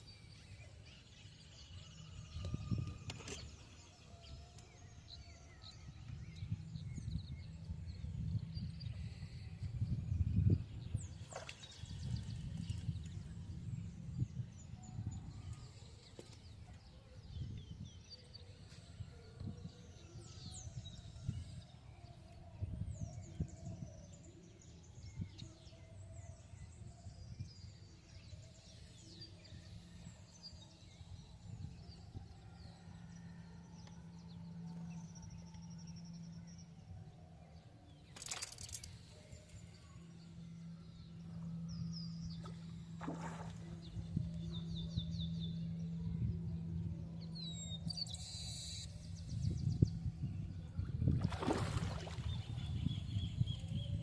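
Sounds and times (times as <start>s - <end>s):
steady low hum: 0.0s - 54.0s
low outdoor rumble: 5.4s - 16.8s, 31.0s - 54.0s.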